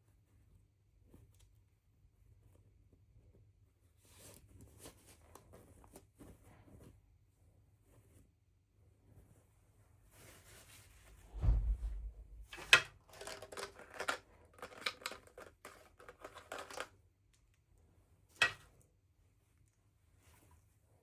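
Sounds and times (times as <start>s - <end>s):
dull thump: 11.1s - 12.7s.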